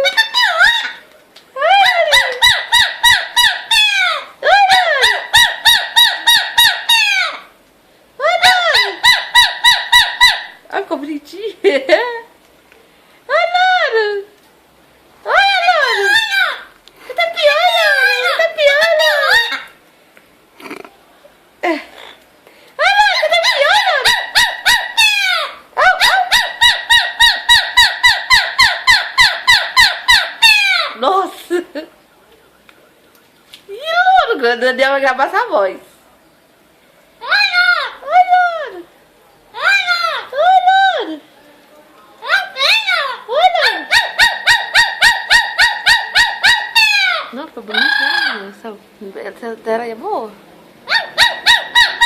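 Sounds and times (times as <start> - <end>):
parrot squawking: 0.0 - 7.6, 8.2 - 10.8, 15.3 - 19.8, 22.8 - 31.2, 37.2 - 38.8, 39.5 - 41.0, 42.2 - 48.7, 50.8 - 52.0.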